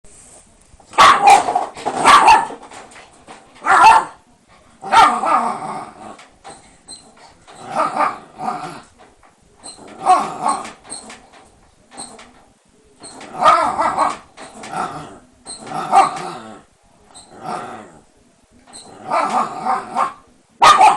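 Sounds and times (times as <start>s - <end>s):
dog barking: 1.0s - 2.6s, 3.6s - 4.2s, 4.8s - 5.4s, 13.4s - 14.2s, 19.1s - 20.9s.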